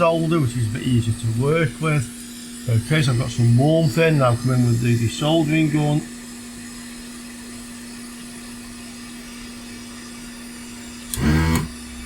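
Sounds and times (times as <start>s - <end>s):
suction pump buzzing: 0.0s - 6.2s, 11.0s - 12.0s
electrical hum and hiss: 0.0s - 12.0s.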